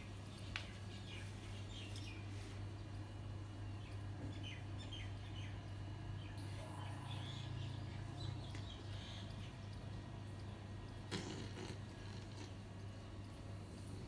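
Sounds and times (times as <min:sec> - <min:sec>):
dog snoring softly: 0:11.1 - 0:12.6.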